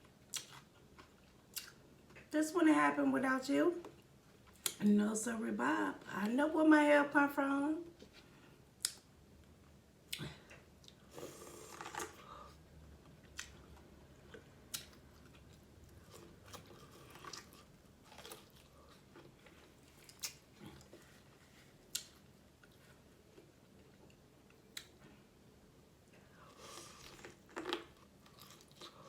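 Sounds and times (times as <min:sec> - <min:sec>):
person chewing and biting: 0:00.3 - 0:01.8, 0:10.8 - 0:12.2, 0:13.2 - 0:23.5, 0:26.5 - 0:29.0.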